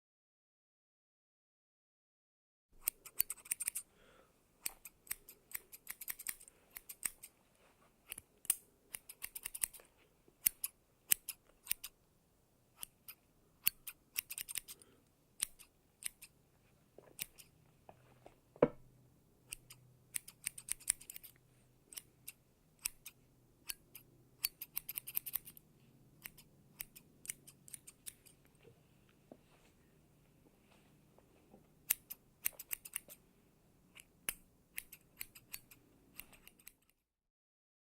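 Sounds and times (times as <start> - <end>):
scissors snipping hair: 2.8 - 3.9, 4.6 - 7.3, 8.0 - 9.8, 10.4 - 12.0, 12.8 - 16.3, 17.2 - 17.5, 19.5 - 25.6, 26.2 - 28.5, 31.8 - 33.2, 33.9 - 37.0.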